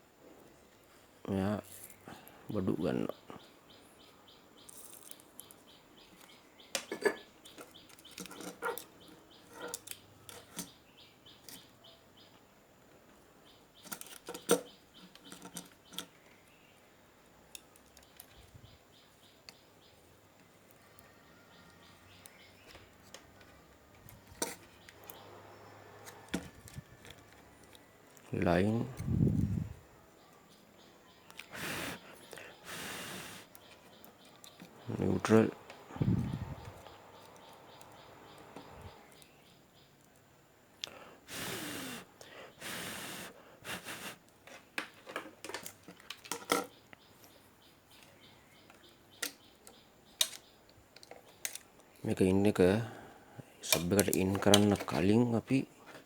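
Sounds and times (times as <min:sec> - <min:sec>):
tools clicking and tapping: 0:06.2 - 0:10.8, 0:13.8 - 0:16.4, 0:22.2 - 0:25.2, 0:48.0 - 0:51.7, 0:53.7 - 0:55.0.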